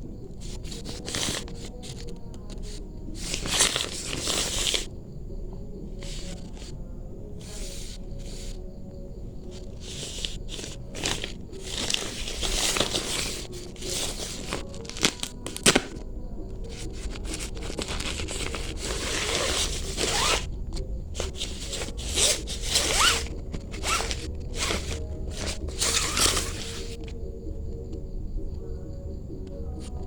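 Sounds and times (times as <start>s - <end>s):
packaging rustling and tearing: 0.4s - 4.9s, 9.5s - 16.0s, 16.7s - 20.5s, 21.2s - 27.0s.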